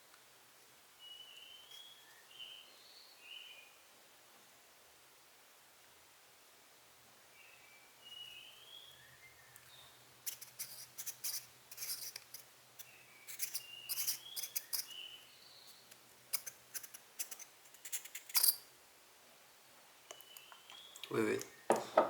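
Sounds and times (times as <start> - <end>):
metal lens parts clicking: 16.3 - 18.6.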